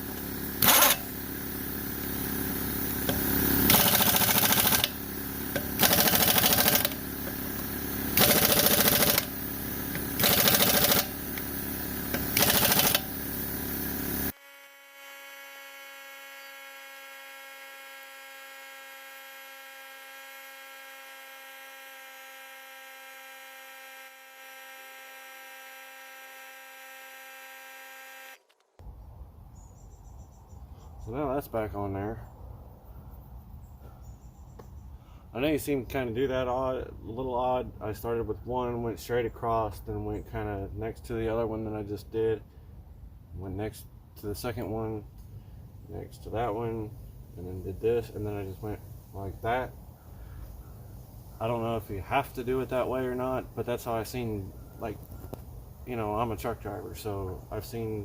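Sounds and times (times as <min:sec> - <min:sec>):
steady mechanical background: 0:00.0 - 0:23.8
impact wrench bursts: 0:00.0 - 0:28.4
steady multi-tone hum: 0:00.0 - 0:28.4.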